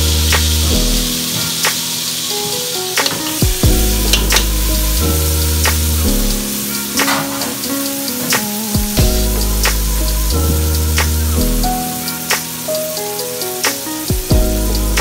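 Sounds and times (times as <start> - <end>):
background music with low notes: 0.0 - 15.0
garlic sizzling in oil: 0.0 - 15.0.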